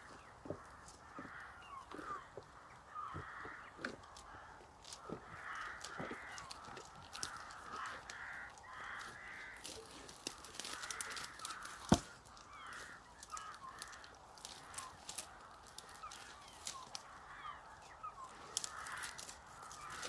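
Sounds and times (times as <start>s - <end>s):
birds harsh calls: 0.0s - 20.0s.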